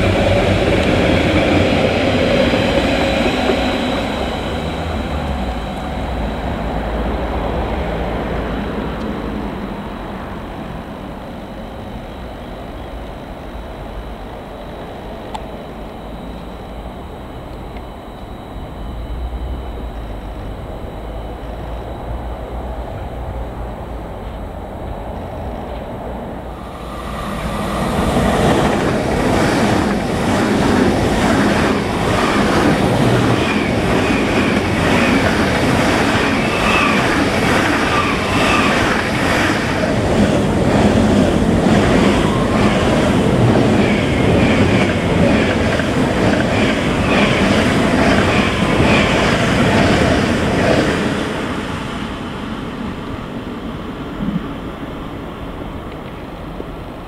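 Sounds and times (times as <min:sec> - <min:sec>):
high wheel squeal: 0:26.6 - 0:40.4.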